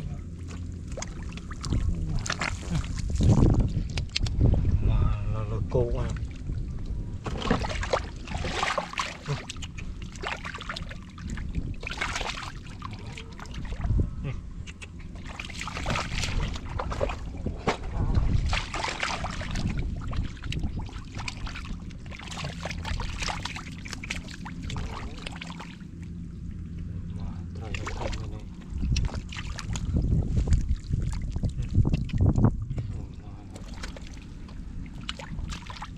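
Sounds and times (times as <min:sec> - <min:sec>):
hands splashing in muddy water: 0:00.4 - 0:04.2, 0:07.2 - 0:13.8, 0:14.8 - 0:25.9, 0:27.6 - 0:32.4, 0:33.5 - 0:35.9.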